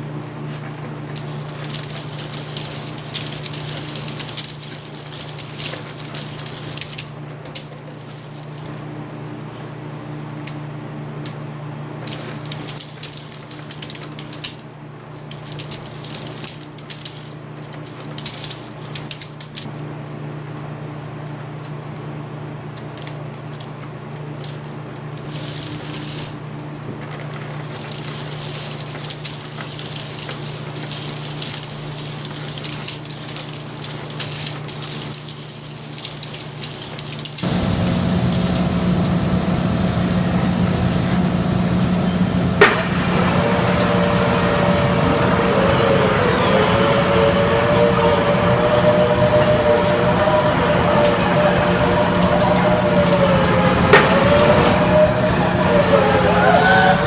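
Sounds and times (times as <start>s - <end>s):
plastic clicking and rattling: 0.1s - 8.8s, 12.0s - 19.8s, 22.8s - 37.8s
motor hum: 37.4s - 57.0s.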